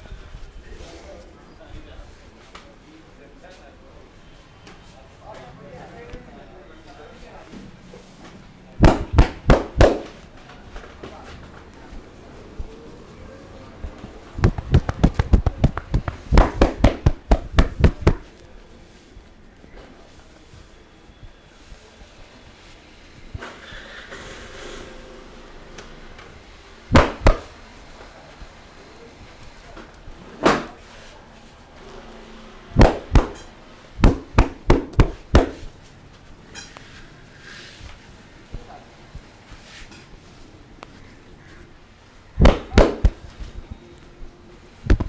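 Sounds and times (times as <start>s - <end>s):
hands slapping on body: 8.8s - 10.2s, 14.0s - 18.3s, 26.9s - 27.5s, 32.8s - 35.7s, 42.4s - 43.4s.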